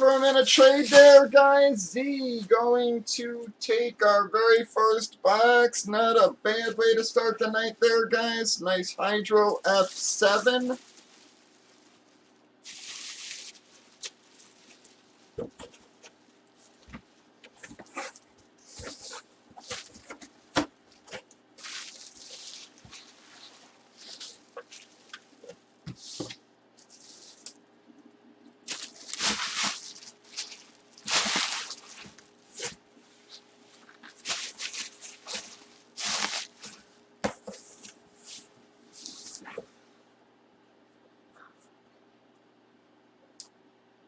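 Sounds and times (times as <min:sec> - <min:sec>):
packaging rustling: 0:09.6 - 0:27.5, 0:28.6 - 0:38.4.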